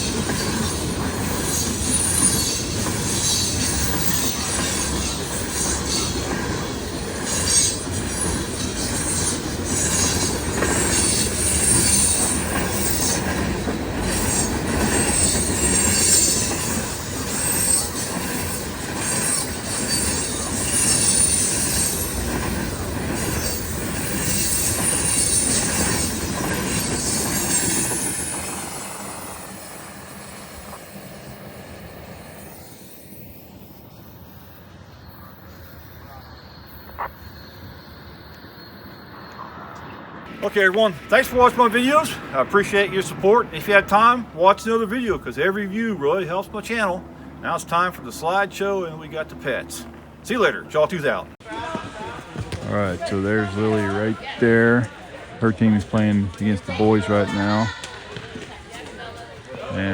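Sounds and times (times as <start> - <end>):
train wheels clattering over rails: 0.0 - 32.9
wheels squealing against rails: 0.0 - 59.9.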